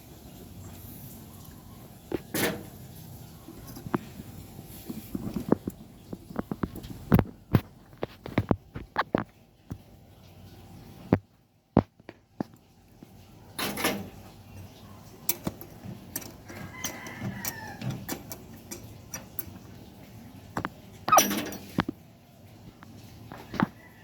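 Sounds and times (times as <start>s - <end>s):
sharp clicks and knocks: 11.1s - 22.0s
rooster crowing faintly: 16.4s - 18.2s, 23.4s - 24.0s.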